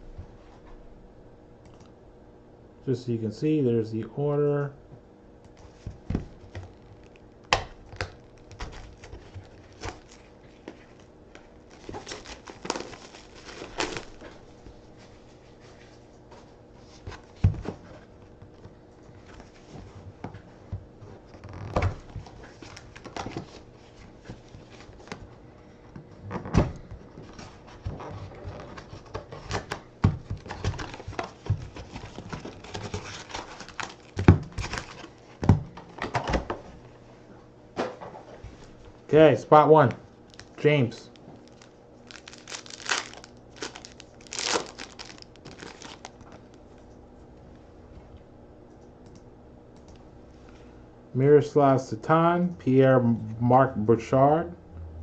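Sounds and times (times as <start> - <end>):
faint steady hum: 0.0 - 55.0
hands handling card packs: 5.5 - 14.5, 27.1 - 36.1, 39.8 - 46.6
packaging crinkling: 5.6 - 14.5, 28.4 - 35.3, 40.2 - 46.6.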